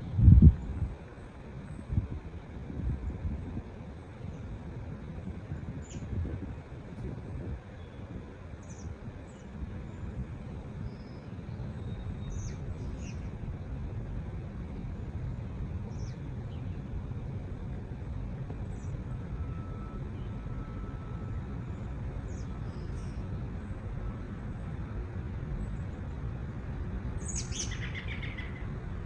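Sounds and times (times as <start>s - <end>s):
low outdoor rumble: 0.0s - 29.0s
bird chirps: 27.2s - 28.7s.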